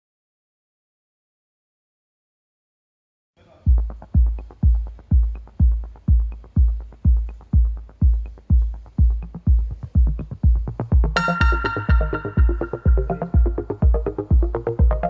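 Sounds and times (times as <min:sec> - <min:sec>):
heavy kick drum beat: 0:03.6 - 0:15.0
electronic dance music: 0:03.7 - 0:15.0.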